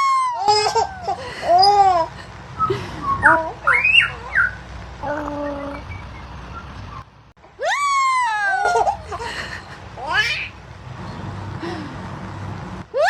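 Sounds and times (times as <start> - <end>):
baby laughing: 0.0 - 5.5, 7.5 - 10.6.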